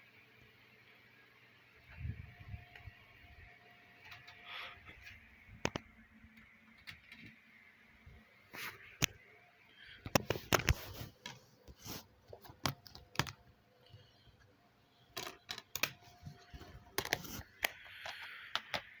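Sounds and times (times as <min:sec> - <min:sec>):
sharp clicks and light knocks: 0:05.6 - 0:07.4.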